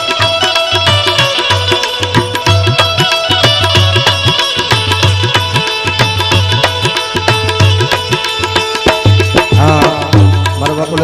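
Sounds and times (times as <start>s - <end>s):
person singing: 9.3s - 11.0s.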